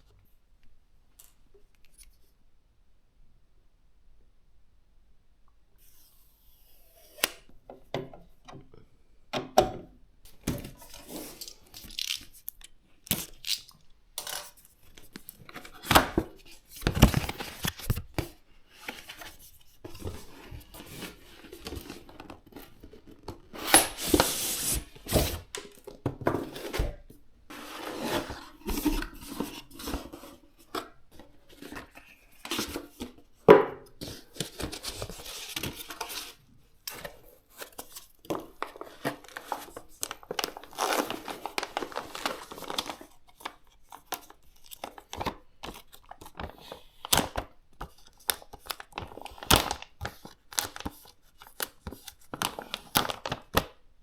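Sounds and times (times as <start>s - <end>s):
rustling or tearing: 10.8s - 13.8s.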